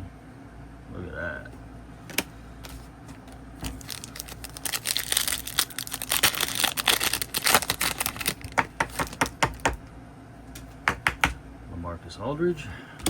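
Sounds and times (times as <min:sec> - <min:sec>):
foil wrapper tearing and crinkling: 0:03.7 - 0:09.6.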